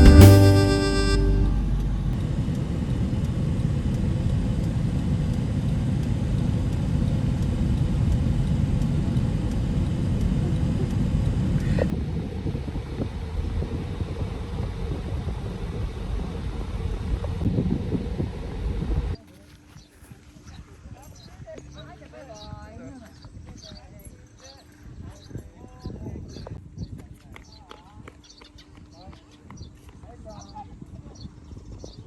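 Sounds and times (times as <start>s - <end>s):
background music: 0.0s - 2.0s.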